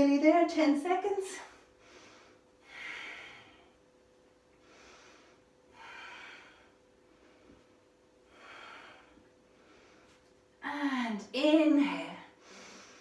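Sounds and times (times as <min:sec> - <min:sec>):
woman breathing deeply: 0:01.5 - 0:03.9, 0:04.5 - 0:10.4, 0:12.3 - 0:13.0.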